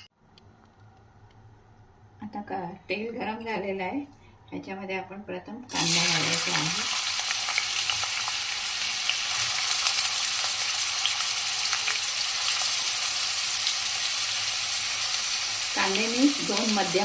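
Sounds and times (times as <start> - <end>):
onion sizzling in hot oil: 5.7 - 17.0.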